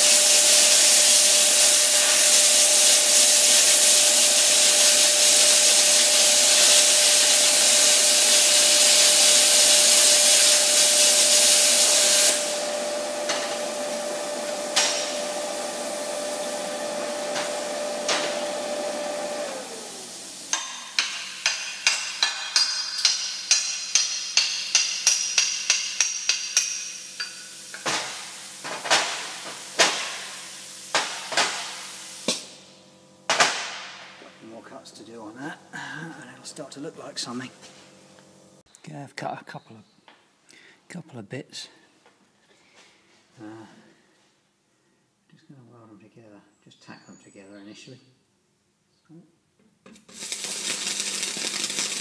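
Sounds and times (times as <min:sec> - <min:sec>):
plasma cutter hissing: 0:00.0 - 0:12.7, 0:20.0 - 0:32.6, 0:50.1 - 0:52.0
sharp metallic taps and knocks: 0:20.5 - 0:28.1.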